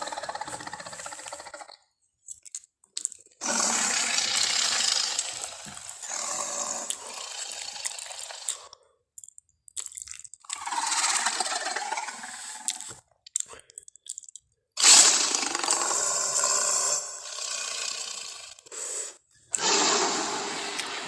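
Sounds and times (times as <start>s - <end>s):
dinosaur roar: 0.0s - 1.8s, 3.4s - 8.7s, 10.5s - 12.9s, 14.8s - 18.6s, 19.5s - 21.0s.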